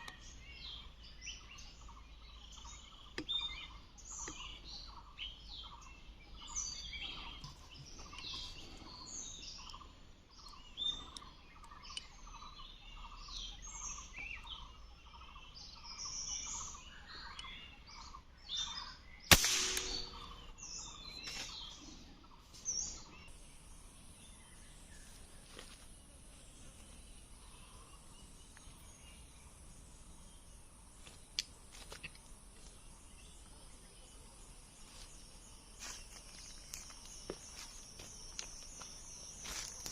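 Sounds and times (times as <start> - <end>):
birds chirping and calling: 0.0 - 39.9
sharp crack: 19.3 - 20.5.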